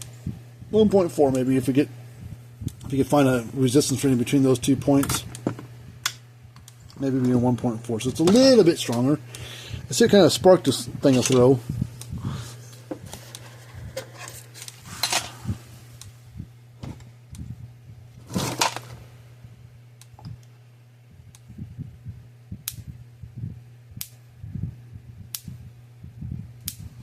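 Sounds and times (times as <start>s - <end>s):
steady low hum: 0.0s - 27.0s
handling noises: 18.2s - 19.1s
electric fence sparks snapping: 26.6s - 26.9s.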